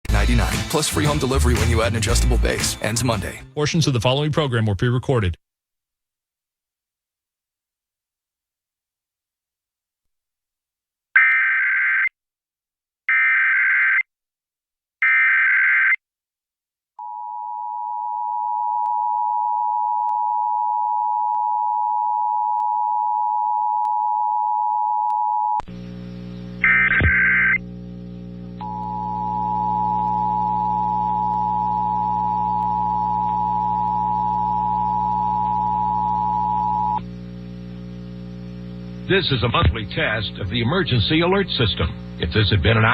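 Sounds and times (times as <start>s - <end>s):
hum: 17.0s - 42.9s.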